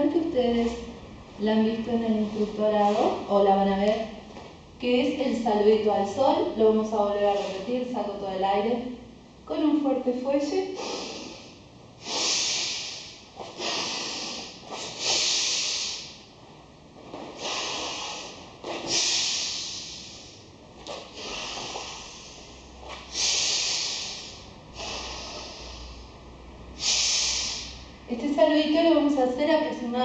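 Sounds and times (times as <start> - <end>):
rough breathing through throat: 10.8 - 16.2, 17.4 - 27.9.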